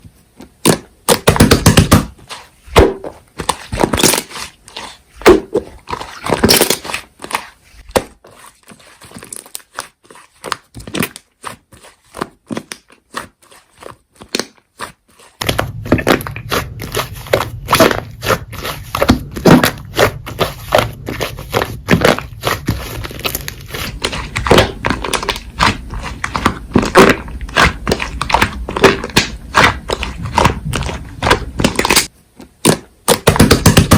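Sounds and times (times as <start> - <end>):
low hum: 15.4 - 24.5.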